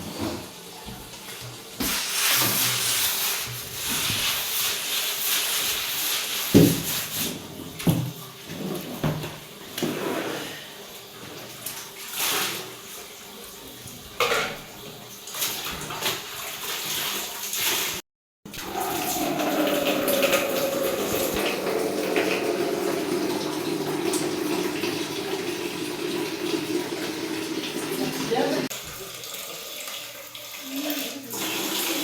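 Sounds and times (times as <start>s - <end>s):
water running from a tap: 10.4s - 32.0s.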